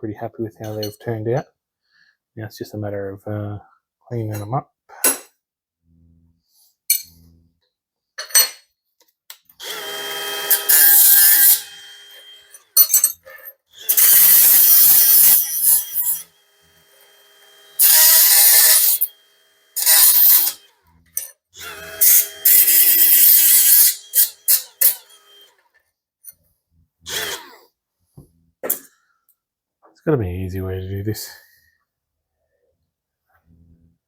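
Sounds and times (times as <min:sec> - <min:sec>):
power tool grinding steel: 0:09.6 - 0:25.7, 0:27.1 - 0:27.7.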